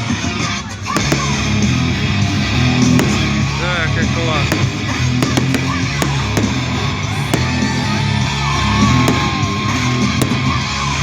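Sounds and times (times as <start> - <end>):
short sharp cracks: 2.8 - 8.0.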